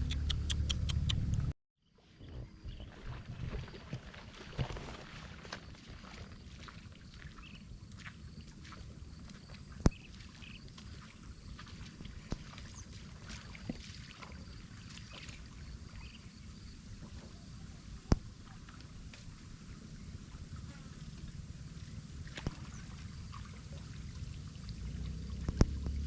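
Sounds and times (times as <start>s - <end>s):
low rumble: 0.0s - 1.5s
water sloshing and splashing: 2.2s - 19.6s, 21.2s - 26.0s.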